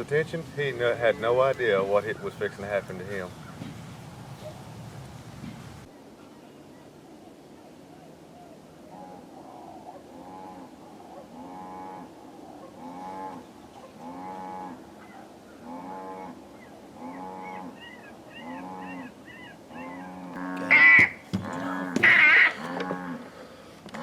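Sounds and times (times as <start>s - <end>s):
electronic animal distress call: 17.0s - 23.2s.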